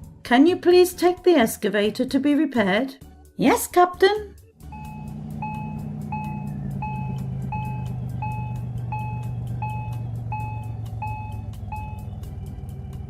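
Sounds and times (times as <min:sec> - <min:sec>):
low engine hum: 0:04.4 - 0:13.0
reversing alarm beeping: 0:04.6 - 0:12.3.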